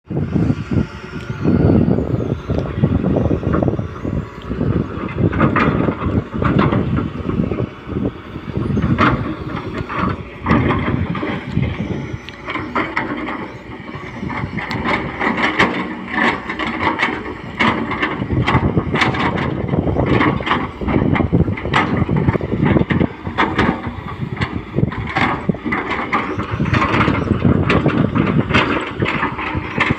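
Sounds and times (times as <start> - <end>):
diesel engine under load: 0.0 - 29.9
squeals: 0.2 - 6.9, 7.6 - 17.2, 24.8 - 29.9
excavator bucket clanking: 1.1 - 29.9.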